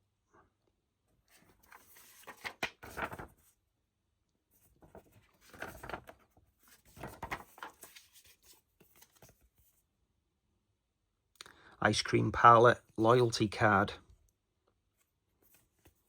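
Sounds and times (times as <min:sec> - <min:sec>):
paper cards rustling: 0:01.3 - 0:03.5, 0:04.6 - 0:09.6.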